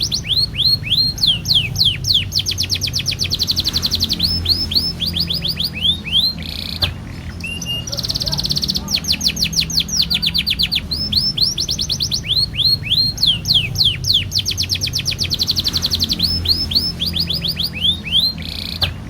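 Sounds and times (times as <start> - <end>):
canary singing: 0.0 - 19.0.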